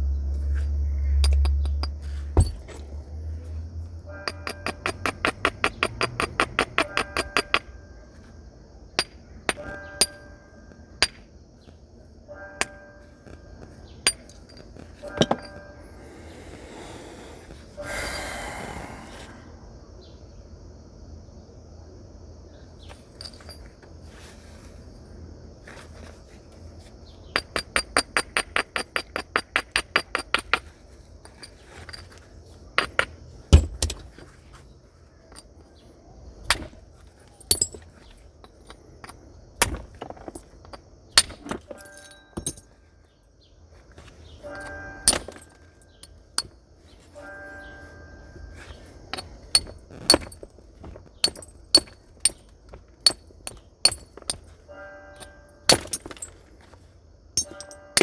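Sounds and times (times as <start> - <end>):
dull thump: 2.4 - 2.8
flint being knapped: 49.6 - 51.2.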